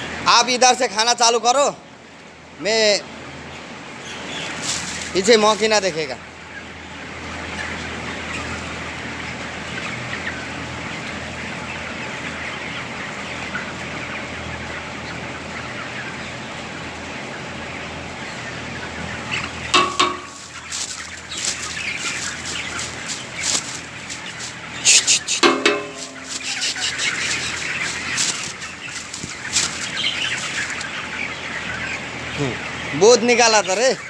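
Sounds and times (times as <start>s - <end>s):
chickens clucking and cheeping: 0.0s - 34.0s
sharp knocks and clatters: 19.7s - 24.7s, 25.4s - 30.5s.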